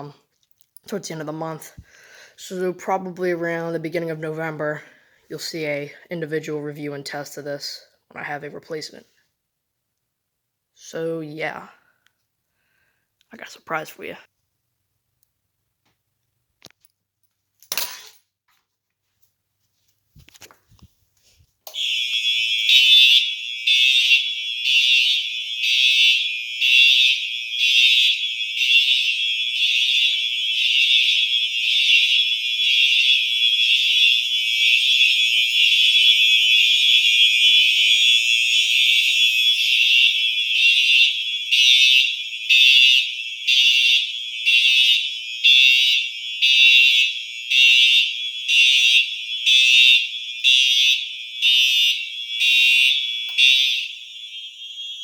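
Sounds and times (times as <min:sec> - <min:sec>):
fire alarm horns pulsing: 0:21.7 - 0:55.0.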